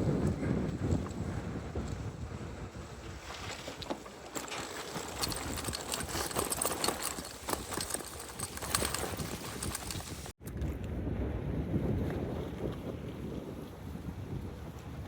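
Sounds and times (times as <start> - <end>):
bicycle rolling over rough surface: 0.4 - 10.3.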